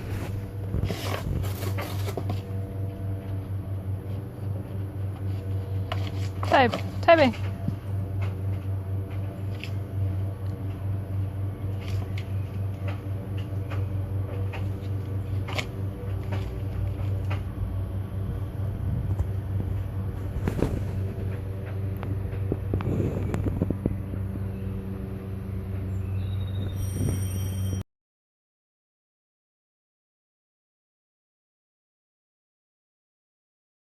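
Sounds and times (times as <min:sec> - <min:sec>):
puppy tearing cardboard box: 0:00.0 - 0:02.6, 0:05.2 - 0:07.1, 0:11.7 - 0:17.5, 0:20.2 - 0:21.3
low mechanical hum: 0:00.0 - 0:27.8.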